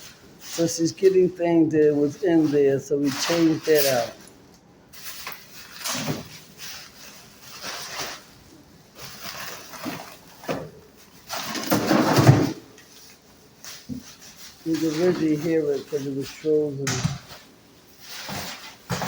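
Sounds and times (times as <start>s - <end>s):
ice scraping and knocking in freezer: 0.5s - 4.2s, 9.0s - 12.9s, 14.7s - 17.4s, 18.1s - 19.0s.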